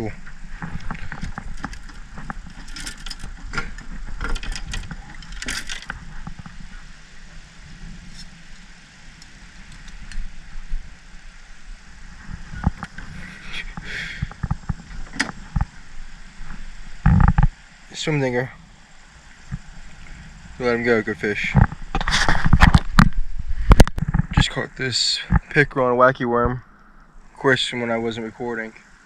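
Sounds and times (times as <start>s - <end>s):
gear clicking and rattling in boat: 0.0s - 6.9s, 12.5s - 18.1s
steady low rumble: 0.0s - 29.0s.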